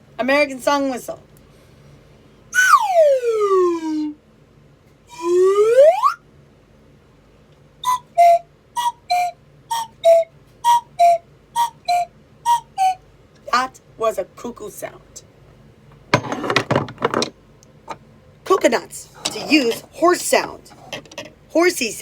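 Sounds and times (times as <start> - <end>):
slide whistle swooping: 2.6 - 4.1, 5.1 - 6.2, 7.8 - 13.0
cuckoo whistle calls: 2.6 - 4.2, 5.1 - 6.2, 7.8 - 13.0.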